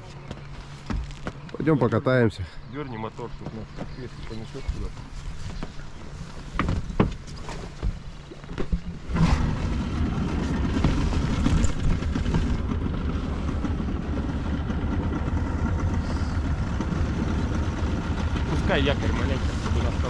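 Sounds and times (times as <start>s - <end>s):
outboard motor running: 0.0s - 20.0s
outboard motor pull-start knocks: 6.6s - 16.0s.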